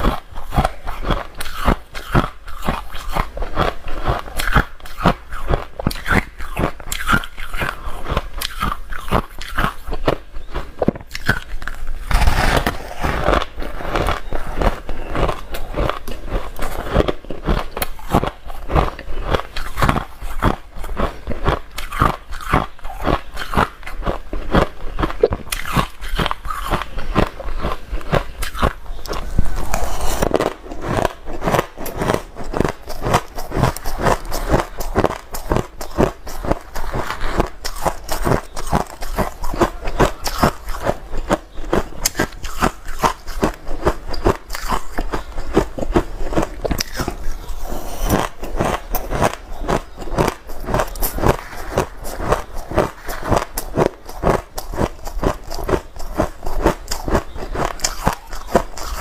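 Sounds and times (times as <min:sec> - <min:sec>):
ice being chewed: 0:00.0 - 0:59.0.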